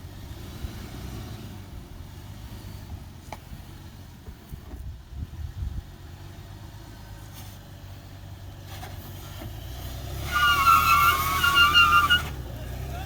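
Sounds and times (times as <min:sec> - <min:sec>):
engine running low: 0:00.0 - 0:13.0
loud wavering high squeal: 0:10.2 - 0:12.4.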